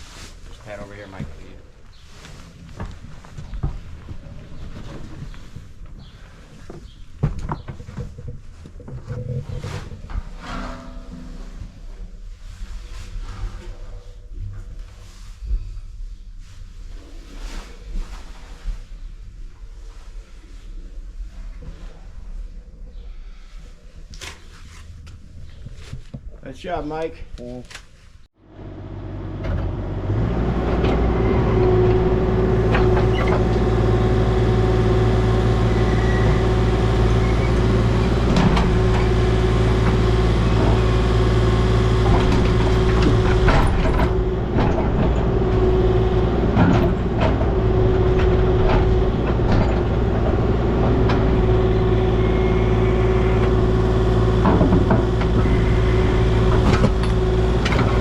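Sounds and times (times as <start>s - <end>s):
metal knocks and clanks: 7.2s - 12.1s, 35.3s - 52.6s, 53.3s - 58.0s
heavy equipment engine running: 28.4s - 58.0s.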